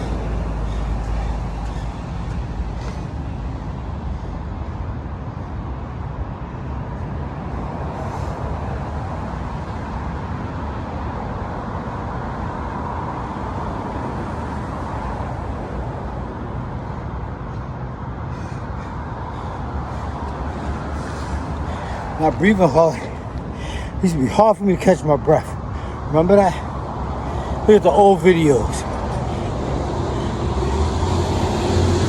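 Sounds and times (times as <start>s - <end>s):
road traffic rush: 0.0s - 32.0s
vehicle passing by: 19.2s - 32.0s.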